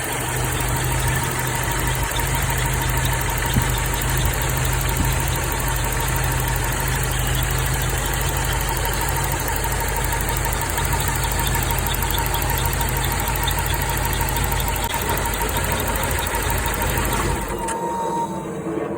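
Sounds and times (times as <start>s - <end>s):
faint fast ticking: 0.0s - 17.7s
car engine idling: 0.0s - 18.3s
thin steady whine: 0.0s - 18.9s.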